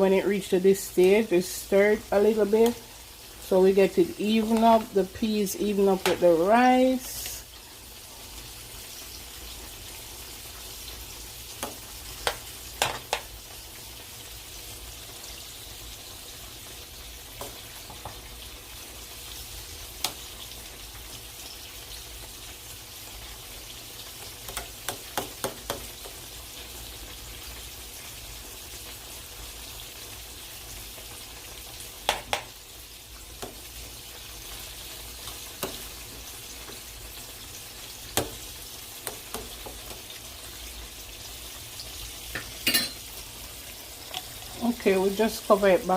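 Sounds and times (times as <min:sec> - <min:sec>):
chicken sizzling in oil: 0:00.0 - 0:45.9
spoon tapping a pot: 0:42.3 - 0:43.0.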